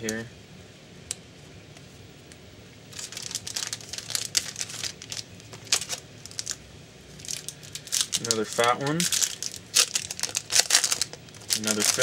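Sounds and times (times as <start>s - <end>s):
trading cards rustling and clicking: 3.0s - 6.6s, 7.2s - 12.0s.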